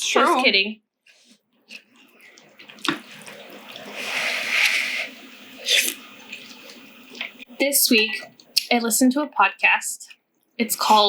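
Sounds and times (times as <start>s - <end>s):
noodles slurped: 1.1s - 8.8s.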